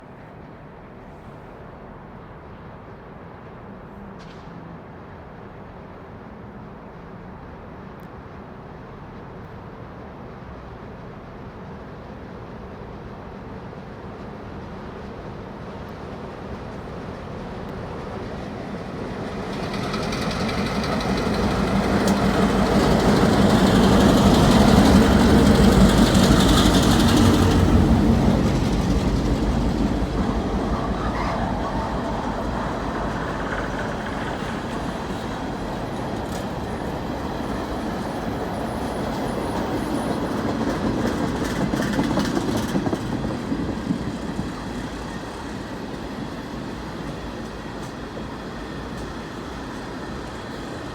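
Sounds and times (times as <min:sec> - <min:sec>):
diesel locomotive engine: 0:00.2 - 0:50.9
train wheels clattering on rails: 0:14.2 - 0:50.9.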